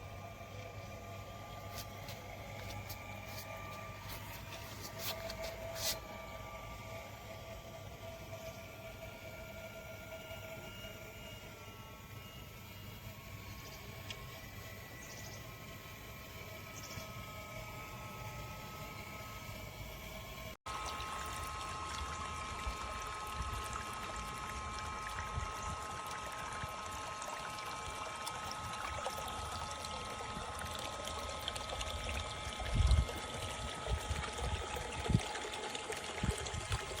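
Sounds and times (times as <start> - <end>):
pool vacuum motor whine: 0.0 - 37.0
water trickling and sloshing: 20.8 - 37.0.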